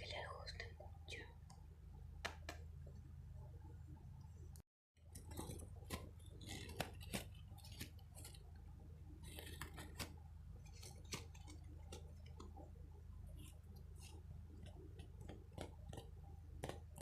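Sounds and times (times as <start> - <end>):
scratchy rustles: 5.2 - 8.5.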